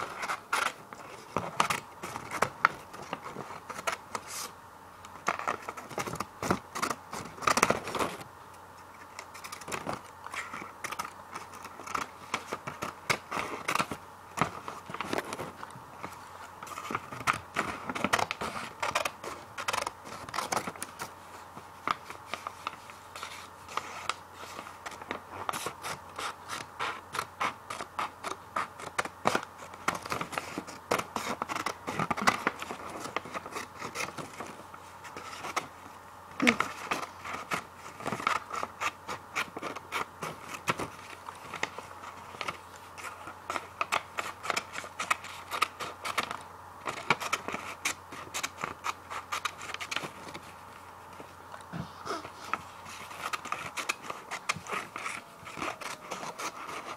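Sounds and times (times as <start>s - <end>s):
scissors cutting paper: 9.1s - 15.4s, 16.7s - 21.0s, 52.1s - 56.9s.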